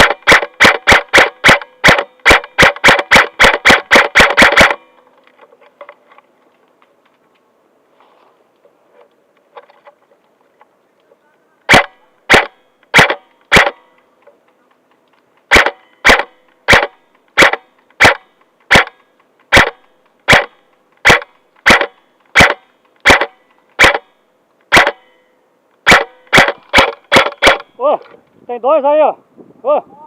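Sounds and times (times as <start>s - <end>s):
airsoft gun shots: 0.0s - 4.9s, 11.7s - 13.9s, 15.5s - 25.2s, 25.8s - 27.8s.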